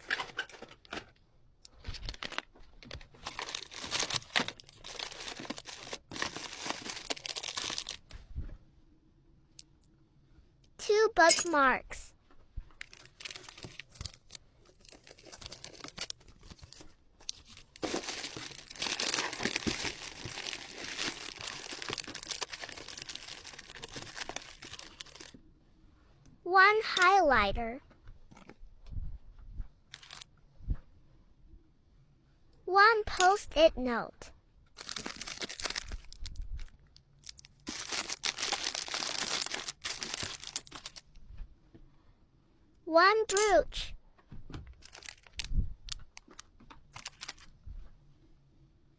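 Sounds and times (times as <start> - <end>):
packaging crinkling: 1.7 - 8.1, 12.8 - 25.4, 29.9 - 30.3, 34.8 - 41.0, 44.8 - 47.5.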